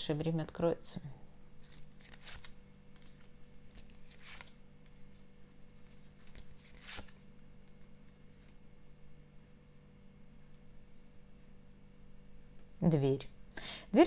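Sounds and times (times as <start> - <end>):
faint low hum: 0.0 - 14.0
cards rustling and tapping: 1.6 - 8.6.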